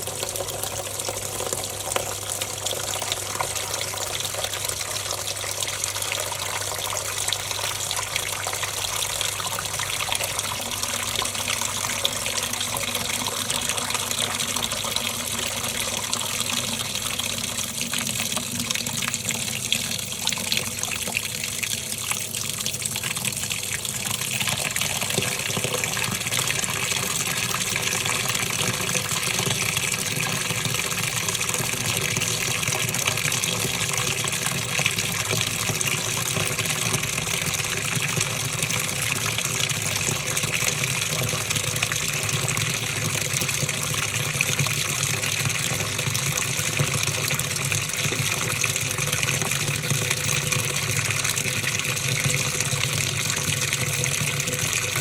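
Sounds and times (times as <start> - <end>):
water rushing into washing machine: 0.0 - 55.0.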